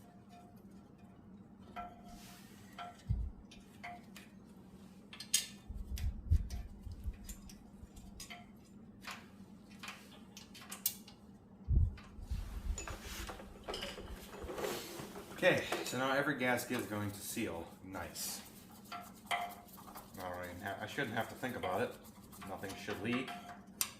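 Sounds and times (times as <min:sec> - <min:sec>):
metal parts clicking and clinking: 0:05.1 - 0:11.2.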